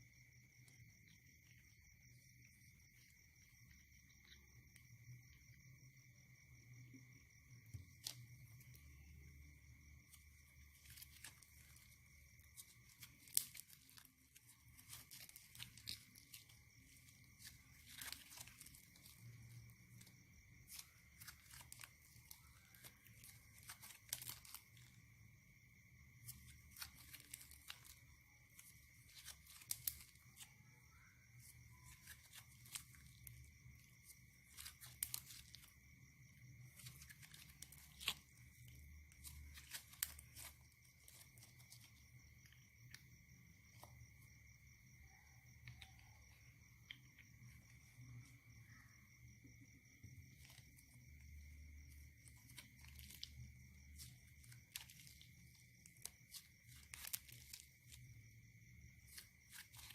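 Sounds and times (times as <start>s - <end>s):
slime crackling and popping: 54.0s - 58.0s.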